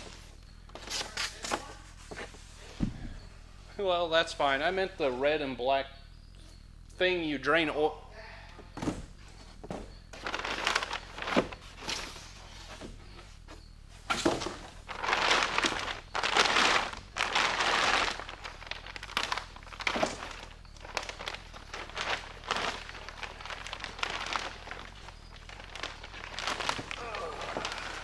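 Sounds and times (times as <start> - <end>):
material rustling and crinkling: 0.0 - 5.1, 8.7 - 28.0.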